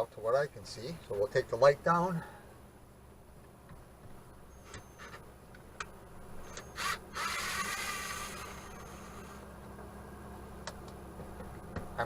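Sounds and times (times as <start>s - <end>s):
cordless drill whirring: 6.5s - 9.4s.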